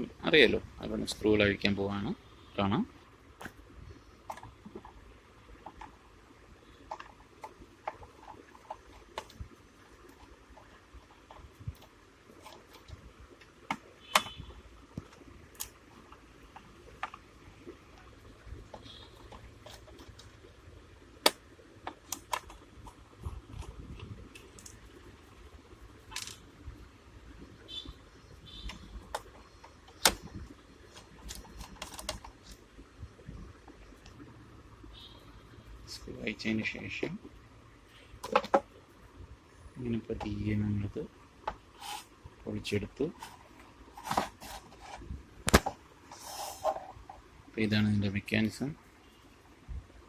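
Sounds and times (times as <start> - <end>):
plastic clicks and taps: 38.2 - 38.7.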